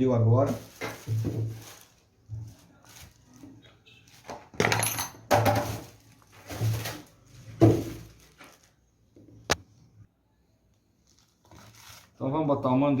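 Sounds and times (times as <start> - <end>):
metal parts clattering: 4.6 - 5.9.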